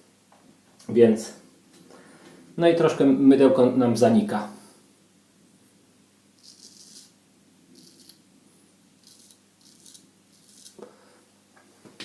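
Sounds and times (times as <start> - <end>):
razor scraping stubble: 6.4 - 7.2, 7.8 - 8.2, 9.0 - 10.8.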